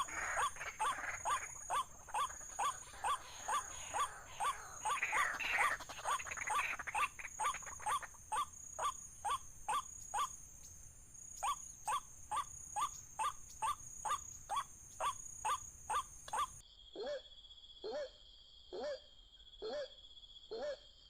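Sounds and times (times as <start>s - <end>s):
waterhen calling kwak notes: 0.0s - 10.4s, 11.4s - 16.6s.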